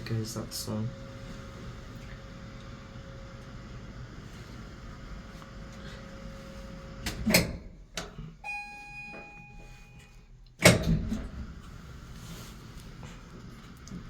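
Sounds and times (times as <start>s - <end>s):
lift gate clunk: 10.6s - 11.3s.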